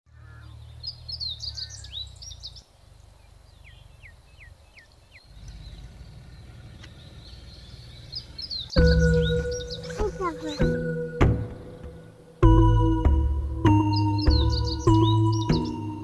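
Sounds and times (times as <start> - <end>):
small birds chirping: 0.1 - 10.9, 13.8 - 16.0
low steady rumble: 0.2 - 9.8.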